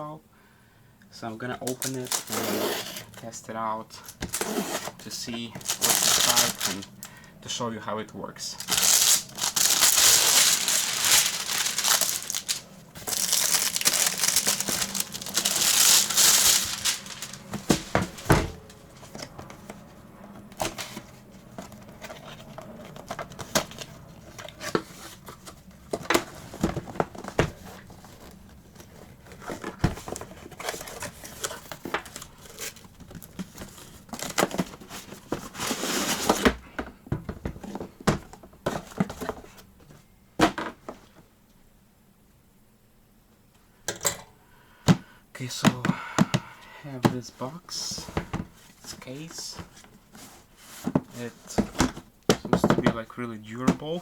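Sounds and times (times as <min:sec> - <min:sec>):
packaging rustling and tearing: 0:01.6 - 0:03.2, 0:04.0 - 0:07.3, 0:08.6 - 0:19.8, 0:20.4 - 0:36.6.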